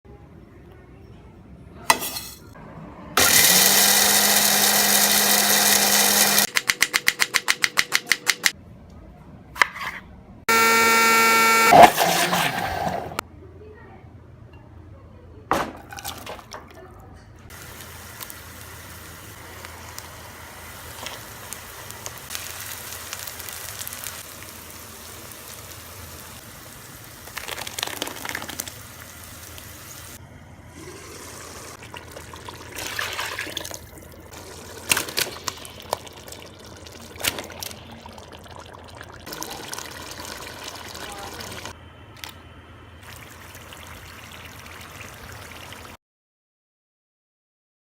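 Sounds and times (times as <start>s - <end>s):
food sizzling in hot oil: 17.5s - 30.2s.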